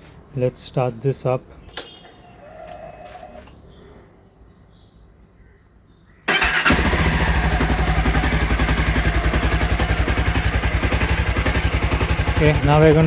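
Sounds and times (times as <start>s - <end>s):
motorcycle engine idling: 6.3s - 13.0s
motorcycle starter turning: 6.3s - 13.0s.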